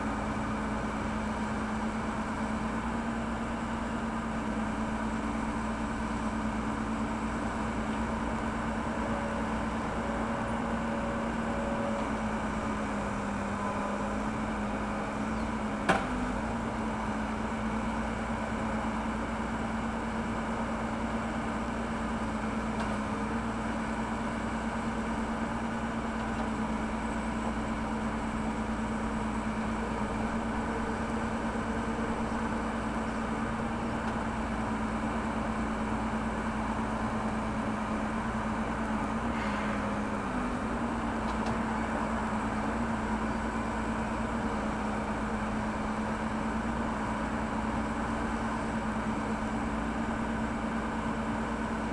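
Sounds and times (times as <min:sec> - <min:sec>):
backhoe diesel engine running: 0:00.0 - 0:51.9.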